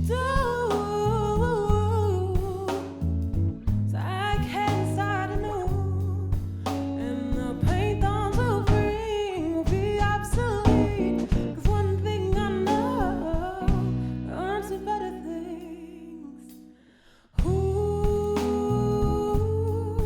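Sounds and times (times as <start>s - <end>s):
woman singing with vibrato: 0.0s - 3.1s, 3.9s - 16.5s, 17.4s - 20.0s
guitar accompaniment: 0.0s - 20.0s.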